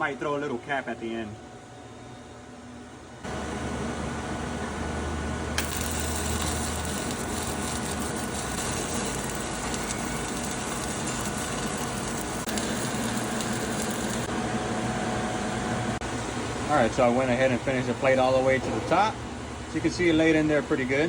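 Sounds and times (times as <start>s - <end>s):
welding arc crackling and sizzling: 5.5s - 14.3s.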